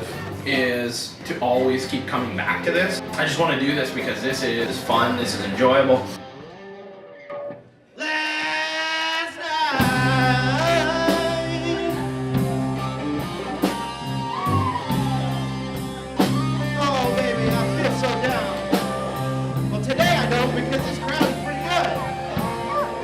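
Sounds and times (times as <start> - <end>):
bass: 0.0 - 6.2, 9.8 - 23.0
drums: 0.0 - 6.4, 9.7 - 23.0
guitar: 0.0 - 23.0
person singing: 7.9 - 13.8, 16.6 - 19.2.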